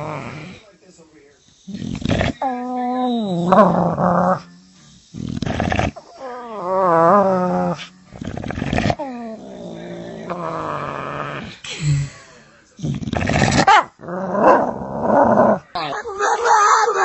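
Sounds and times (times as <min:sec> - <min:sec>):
dog breathing: 0:00.0 - 0:02.6, 0:03.3 - 0:06.6
dog howling: 0:06.1 - 0:07.8.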